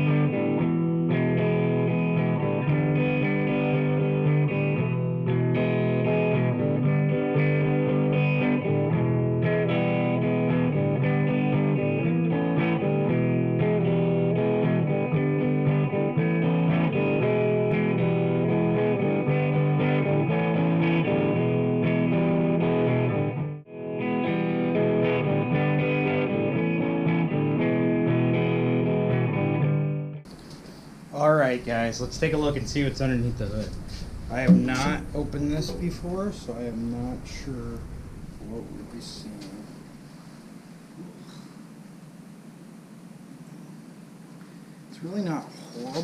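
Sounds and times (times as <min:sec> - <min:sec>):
distorted electric guitar rock music: 0:00.0 - 0:30.2.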